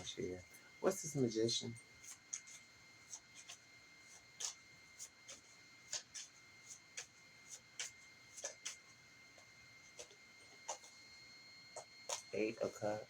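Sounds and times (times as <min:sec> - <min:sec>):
cards ticking and rustling: 0:02.0 - 0:08.8.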